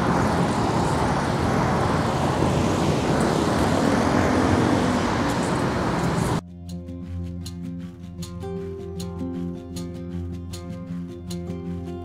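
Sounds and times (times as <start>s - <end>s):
city road traffic: 0.0s - 12.0s
background music: 6.4s - 12.0s.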